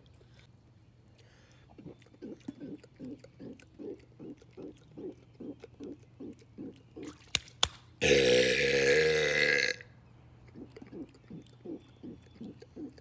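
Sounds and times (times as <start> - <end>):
soft rhythmic pulses: 1.7 - 7.3, 10.1 - 13.0
man burping: 8.0 - 9.9.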